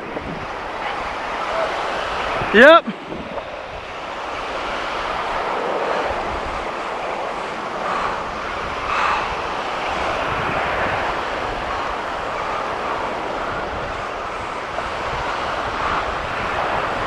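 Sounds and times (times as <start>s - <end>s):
surf rushing: 0.0s - 17.0s
wind buffeting microphone: 0.0s - 17.0s.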